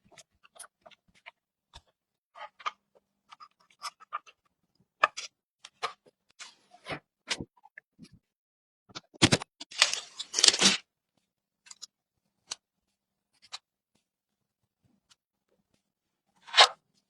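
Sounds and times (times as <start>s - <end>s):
packaging rustling and scraping: 9.7s - 10.8s.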